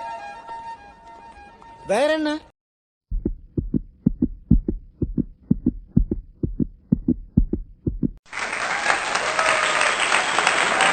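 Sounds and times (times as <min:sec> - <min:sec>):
heartbeat thumps: 0:03.1 - 0:08.2
loud applause: 0:08.3 - 0:10.9.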